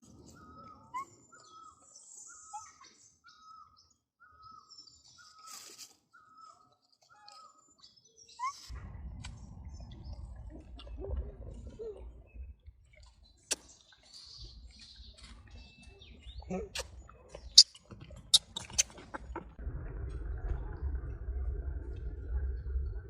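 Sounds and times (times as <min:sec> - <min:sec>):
bird calling: 0:00.2 - 0:07.6
low rumbling noise: 0:08.7 - 0:13.3, 0:19.0 - 0:23.0.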